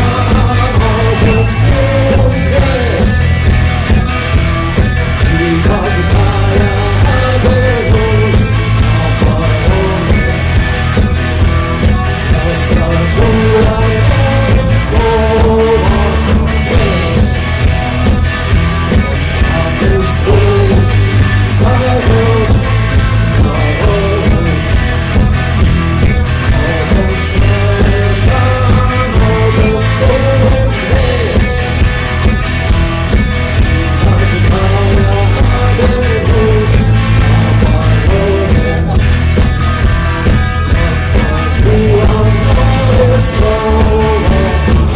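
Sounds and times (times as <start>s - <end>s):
rock band playing live: 0.0s - 44.9s
steady drum beat: 0.0s - 44.9s.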